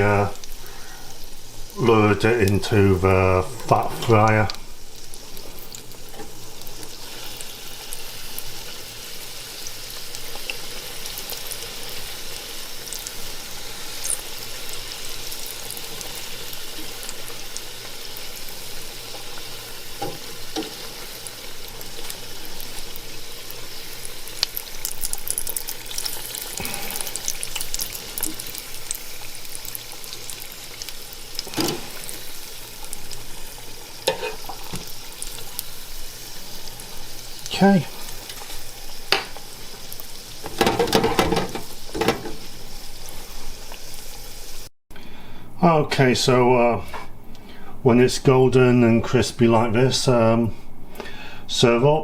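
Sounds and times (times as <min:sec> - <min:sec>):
deep-frying sizzle and crackle: 0:00.0 - 0:44.7
dull knocks on fryer: 0:40.5 - 0:42.4.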